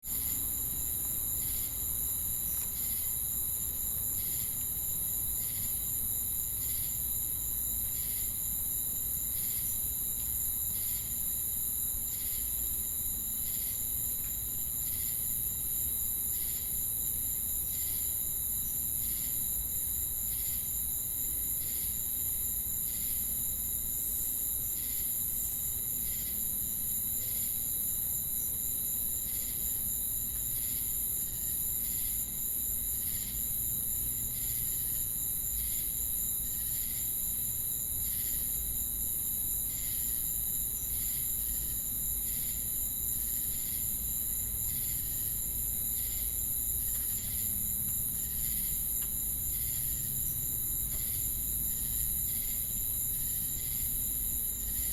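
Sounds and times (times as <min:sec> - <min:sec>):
pulsing insect chirp: 0:00.1 - 0:54.9
crickets and cicadas shrilling: 0:28.8 - 0:54.9.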